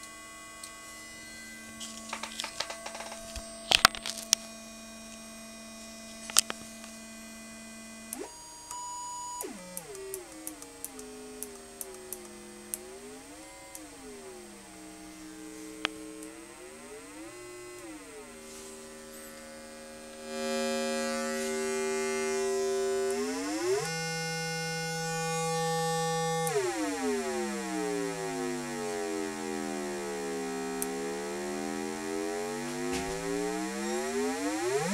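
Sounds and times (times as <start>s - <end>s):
electronic square-wave tone: 0.0s - 34.9s.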